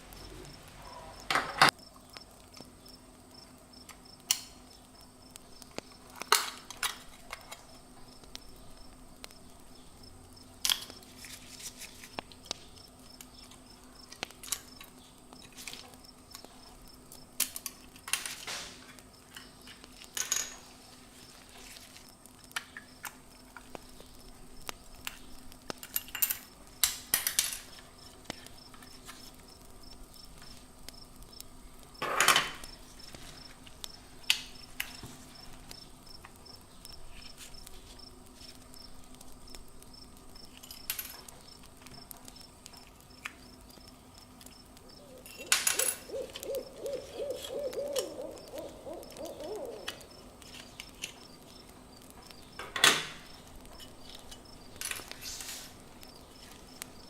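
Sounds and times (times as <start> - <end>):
faint steady hum: 0.0 - 57.0
hand tools and metal parts clinking: 1.1 - 1.7, 6.1 - 7.7, 17.4 - 22.0, 25.0 - 29.3, 32.0 - 32.7, 40.5 - 41.4, 44.4 - 46.4, 52.6 - 55.8.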